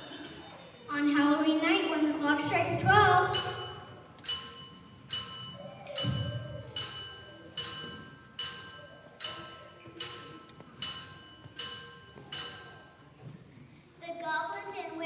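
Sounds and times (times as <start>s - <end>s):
clock chime striking: 3.3s - 13.0s.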